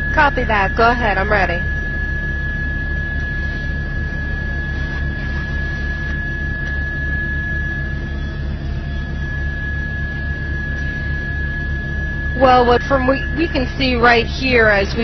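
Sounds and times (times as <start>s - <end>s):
helicopter engine and rotor drone: 0.0s - 15.0s.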